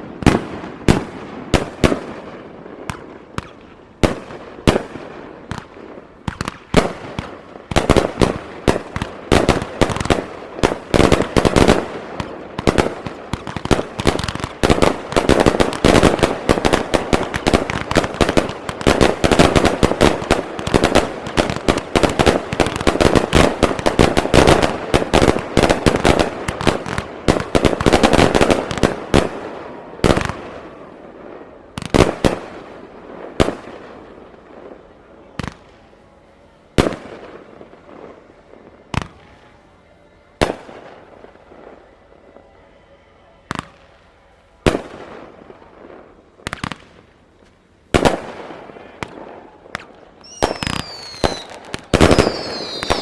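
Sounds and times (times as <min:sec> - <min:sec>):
firework booms: 0:00.0 - 0:34.8, 0:47.9 - 0:53.0
fireworks bursts and crackling: 0:00.0 - 0:53.0.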